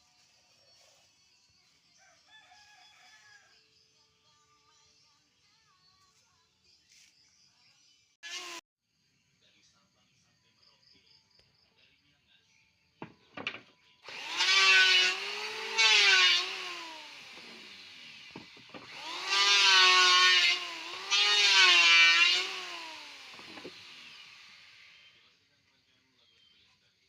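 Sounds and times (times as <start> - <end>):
electric planer shaving wood: 8.3 - 8.6, 13.0 - 25.1
planer motor whine: 13.3 - 25.2.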